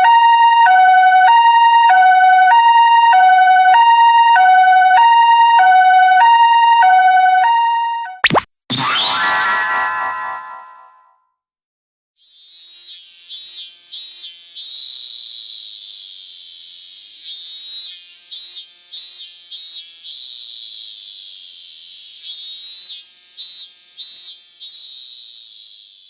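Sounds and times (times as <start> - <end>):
cicada buzzing: 12.2 - 26.0.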